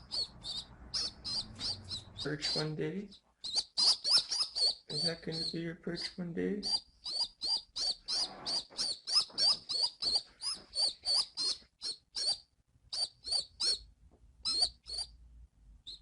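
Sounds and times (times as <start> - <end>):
young pigeon peeping: 0.0 - 15.2, 15.8 - 16.0.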